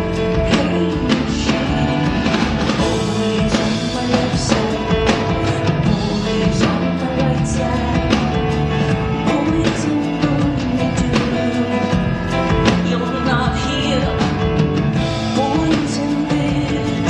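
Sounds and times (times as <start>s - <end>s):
bass notes: 0.0s - 17.0s
drum kit beat: 0.0s - 17.0s.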